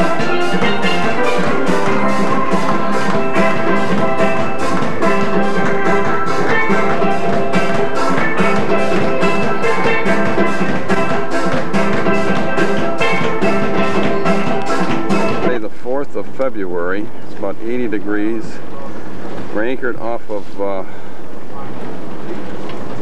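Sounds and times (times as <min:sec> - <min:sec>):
steel pan notes: 0:00.0 - 0:16.4
steady drum beat: 0:00.0 - 0:18.0.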